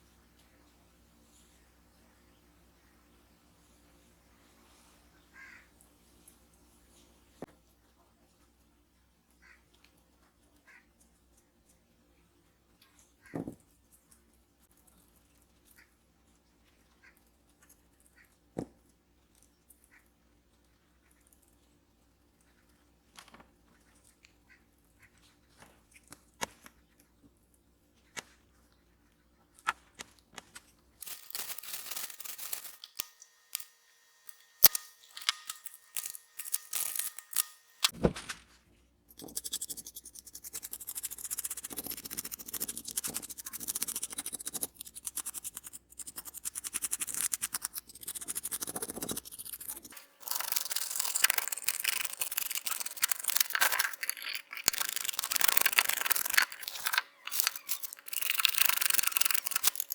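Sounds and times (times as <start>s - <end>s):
fast scratchy scrubbing: 39.2s - 59.9s.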